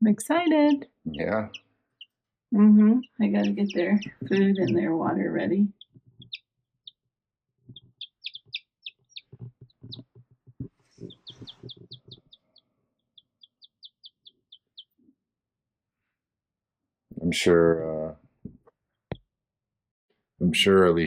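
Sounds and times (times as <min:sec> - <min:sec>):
chicks peeping: 0:02.6 - 0:05.2, 0:07.7 - 0:12.4.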